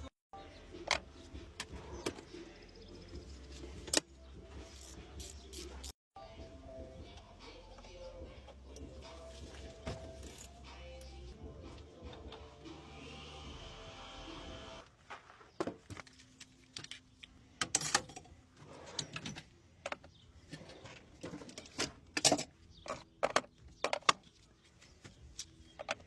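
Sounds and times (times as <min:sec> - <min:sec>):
metallic clicks and clanks of tools: 0:16.4 - 0:24.4.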